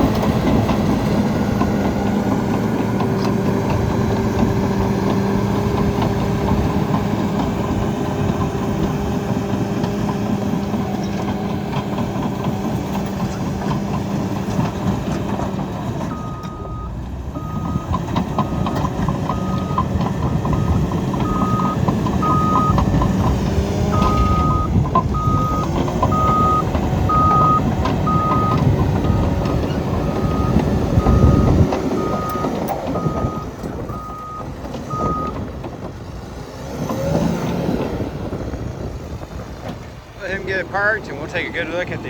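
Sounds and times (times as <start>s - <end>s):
bulldozer diesel engine: 0.0s - 42.0s
backup alarm beeping: 16.1s - 35.4s.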